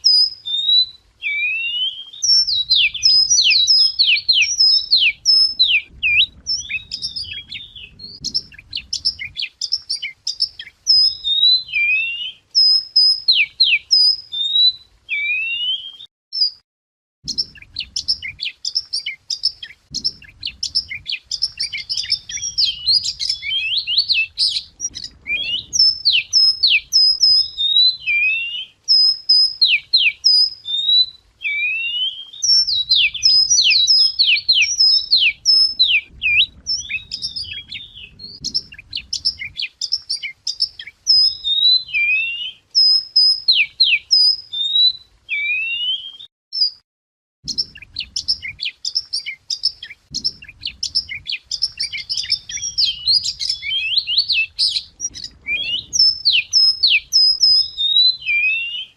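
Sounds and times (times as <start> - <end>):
bird singing: 0.0 - 16.6, 17.2 - 46.8, 47.4 - 58.9
faint low rumble: 5.5 - 9.4, 19.8 - 27.0, 35.7 - 39.6, 50.1 - 53.6, 54.6 - 57.2.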